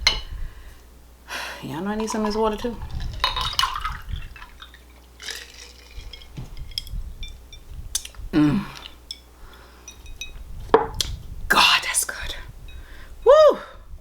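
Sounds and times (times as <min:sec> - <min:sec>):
sipping and swallowing water: 0:01.6 - 0:07.1, 0:07.8 - 0:09.6
small high clinks: 0:02.8 - 0:11.2.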